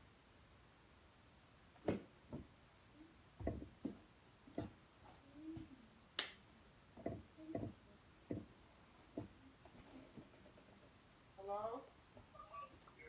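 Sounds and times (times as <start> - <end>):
knocks and taps: 3.4 - 4.8, 7.0 - 8.5, 9.1 - 9.4.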